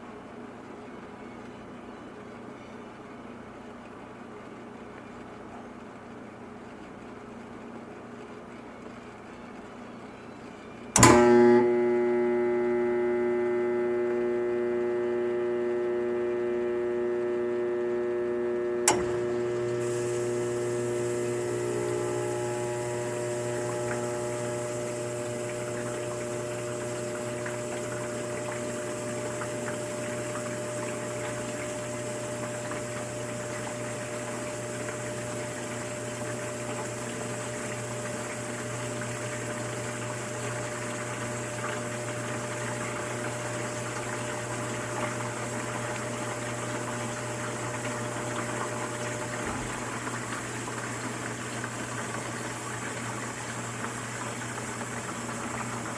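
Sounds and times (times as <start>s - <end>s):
dishwasher pump motor humming: 0.0s - 55.9s
dishwasher click: 11.0s - 11.4s.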